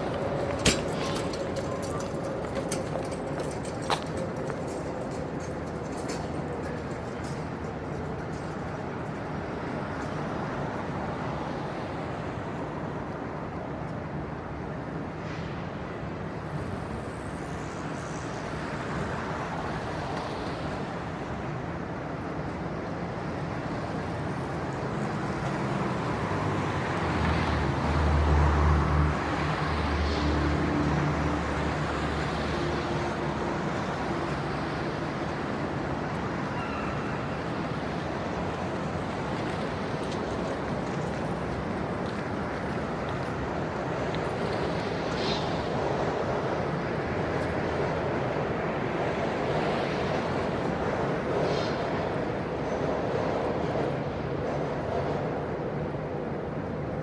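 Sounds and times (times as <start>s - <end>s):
rumble of passing cars: 0.0s - 57.0s.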